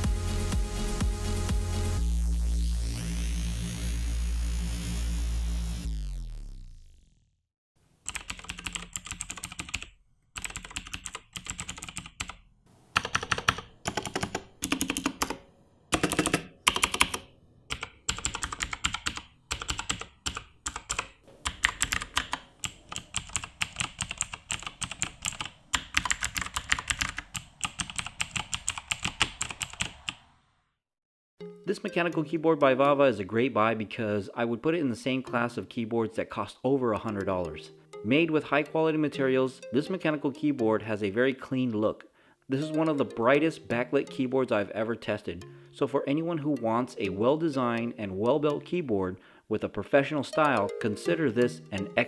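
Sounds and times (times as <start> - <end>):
clicky mechanical keyboard typing: 8.1 - 12.4, 13.0 - 30.2.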